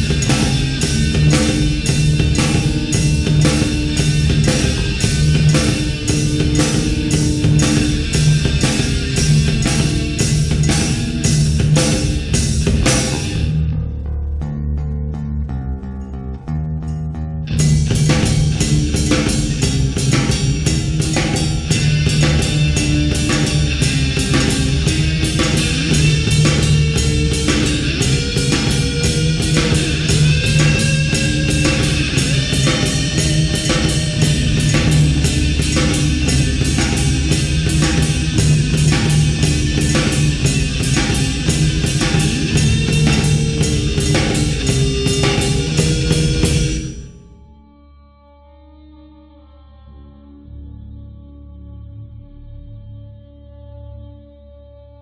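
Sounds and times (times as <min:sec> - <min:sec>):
rock music with drums and guitar: 0:00.0 - 0:13.8, 0:17.4 - 0:47.5.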